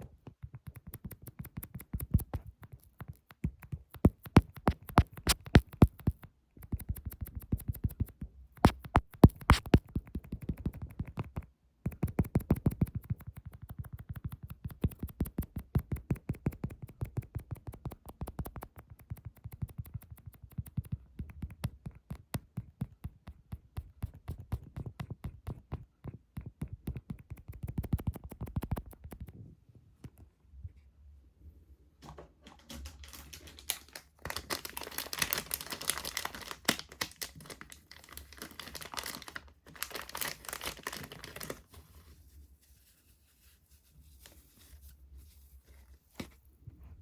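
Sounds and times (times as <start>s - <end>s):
fingertip tapping: 0.2s - 29.3s.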